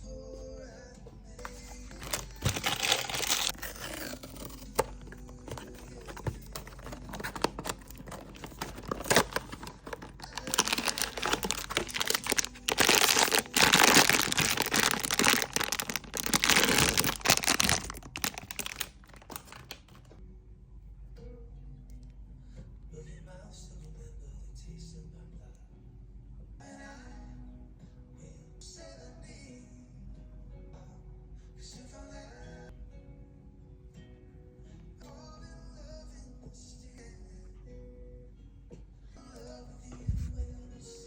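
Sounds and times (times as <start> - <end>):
packaging tearing and crinkling: 1.4 - 20.1.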